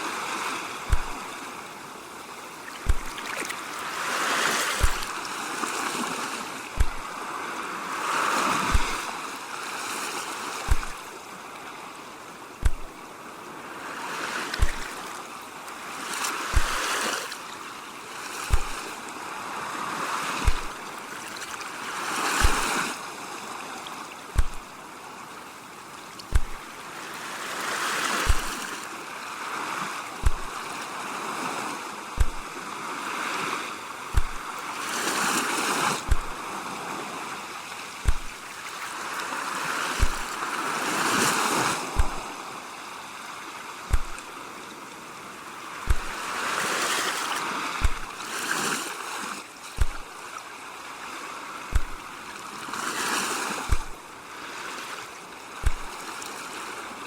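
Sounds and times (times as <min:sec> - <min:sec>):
ocean waves washing in: 0:00.0 - 0:57.0
low thump: 0:00.9 - 0:01.2, 0:02.8 - 0:03.2, 0:04.8 - 0:05.1, 0:06.8 - 0:07.0, 0:08.7 - 0:09.0, 0:10.7 - 0:11.0, 0:12.6 - 0:13.0, 0:14.6 - 0:15.0, 0:16.6 - 0:16.8, 0:18.5 - 0:18.8, 0:20.4 - 0:20.8, 0:22.4 - 0:22.7, 0:24.4 - 0:24.7, 0:26.3 - 0:26.6, 0:28.3 - 0:28.6, 0:30.2 - 0:30.6, 0:32.2 - 0:32.5, 0:34.2 - 0:34.5, 0:36.1 - 0:36.4, 0:38.0 - 0:38.4, 0:40.0 - 0:40.3, 0:42.0 - 0:42.2, 0:43.9 - 0:44.2, 0:45.9 - 0:46.2, 0:47.8 - 0:48.2, 0:49.8 - 0:50.1, 0:51.7 - 0:52.0, 0:53.7 - 0:54.0, 0:55.6 - 0:56.0.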